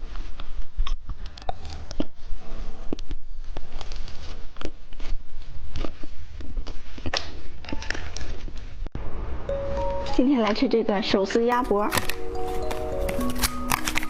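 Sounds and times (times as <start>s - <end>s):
crunching hard candy: 11.8s - 14.0s.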